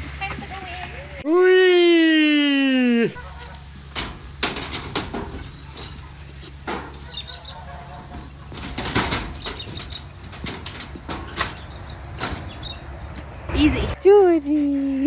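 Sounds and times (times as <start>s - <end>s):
rustles and knocks: 3.4s - 13.5s.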